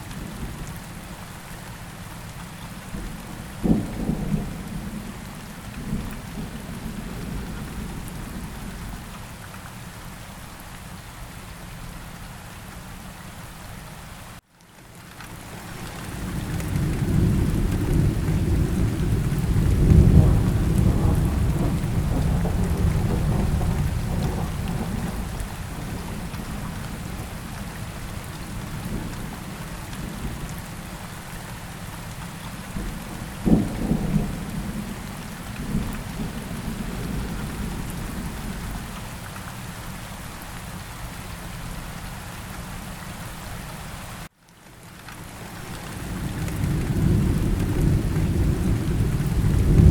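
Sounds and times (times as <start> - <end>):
steady rain: 0.0 - 49.9
rolling thunder: 16.2 - 29.4, 32.7 - 38.9, 46.0 - 49.9
sharp thunderclap: 16.7 - 26.4, 46.1 - 49.9.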